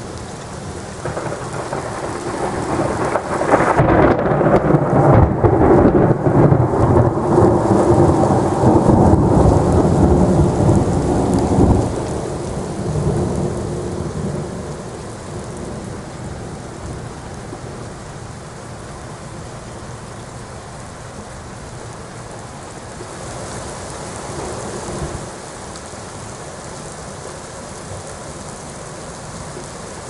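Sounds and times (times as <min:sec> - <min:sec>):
thunder rumble: 0:00.0 - 0:20.1
steady rain: 0:00.0 - 0:30.0.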